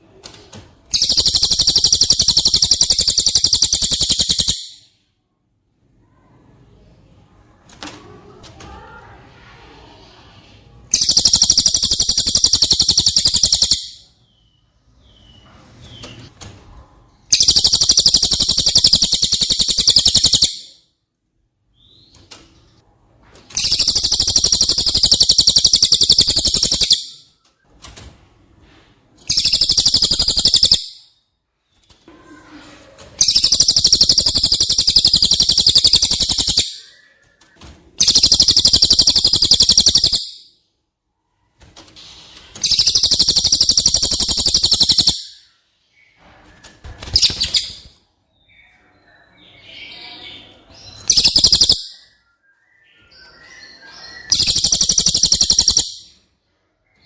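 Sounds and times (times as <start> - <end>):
bird rattling trill: 0.9 - 4.8, 10.9 - 14.0, 17.3 - 20.7, 23.5 - 27.2, 29.2 - 31.0, 33.2 - 36.8, 38.0 - 40.4, 42.6 - 45.3, 47.0 - 48.0, 51.0 - 51.9, 54.3 - 56.1.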